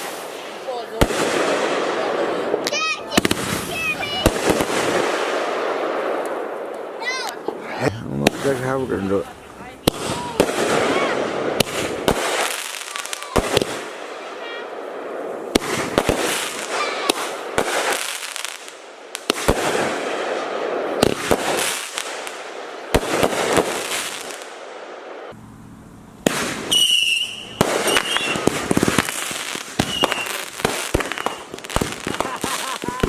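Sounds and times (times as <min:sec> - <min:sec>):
crackling hiss: 0:00.0 - 0:33.0
firework bangs: 0:00.0 - 0:33.0
firework whistle: 0:26.2 - 0:33.0.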